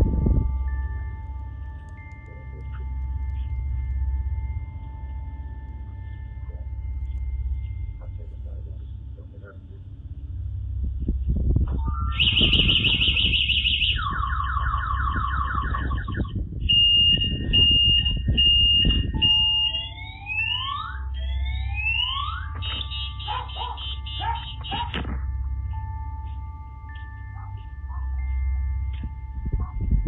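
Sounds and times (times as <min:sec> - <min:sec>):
low rumble: 0:00.0 - 0:30.0
car alarm siren: 0:11.7 - 0:30.0.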